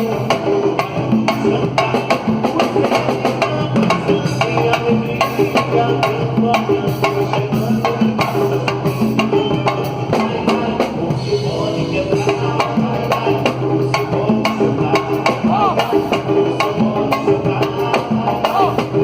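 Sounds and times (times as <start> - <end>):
quick percussion beat: 0.0 - 19.0
samba band playing: 0.0 - 19.0.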